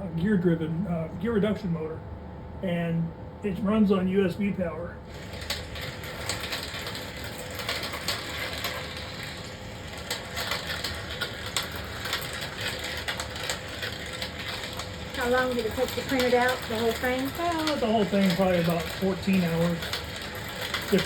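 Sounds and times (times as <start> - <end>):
steel balls rattling along tracks: 5.1 - 21.0.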